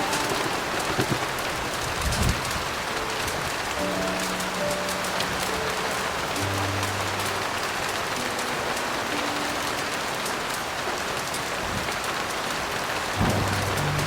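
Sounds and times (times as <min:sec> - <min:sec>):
heavy rain falling: 0:00.0 - 0:14.0
soft low piano notes: 0:13.2 - 0:14.0.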